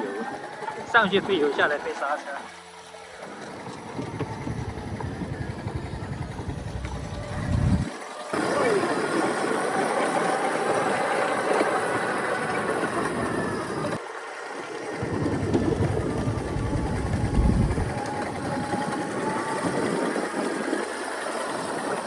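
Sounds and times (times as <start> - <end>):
motorcycle engine running: 2.5 - 9.4, 14.9 - 19.6.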